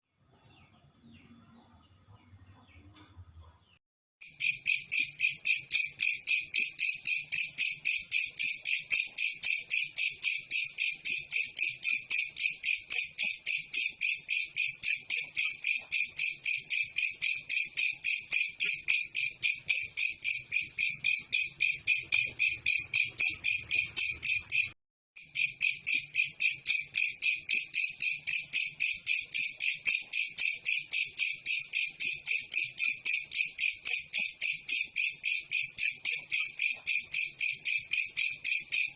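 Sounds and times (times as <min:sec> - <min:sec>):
katydid clicking call: 0:04.2 - 0:33.2.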